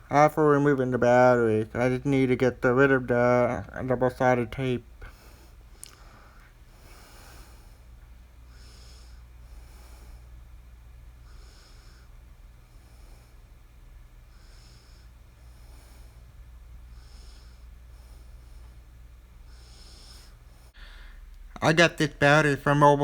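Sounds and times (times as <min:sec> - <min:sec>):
faint steady low hum: 0:00.0 - 0:23.0
soft nasal breathing: 0:04.8 - 0:21.6.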